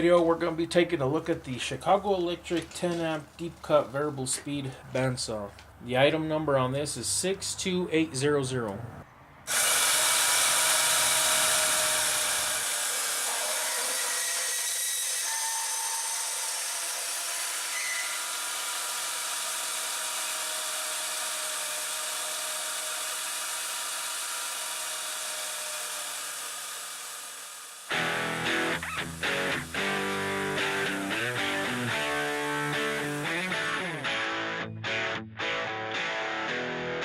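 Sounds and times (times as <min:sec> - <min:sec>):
band saw whining: 0:09.5 - 0:34.2.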